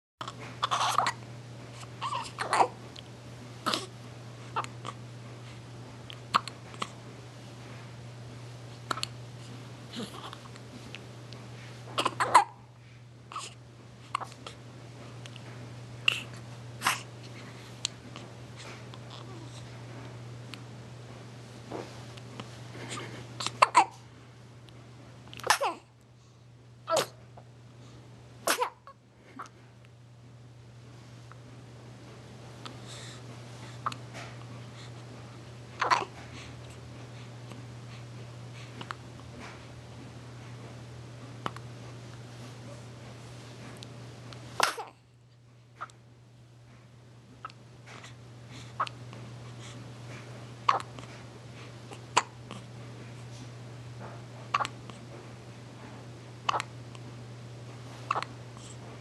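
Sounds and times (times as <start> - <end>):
low electrical hum: 0.2 - 59.0
person hiccuping: 0.6 - 1.2, 12.0 - 12.6, 26.9 - 27.2, 54.6 - 54.8.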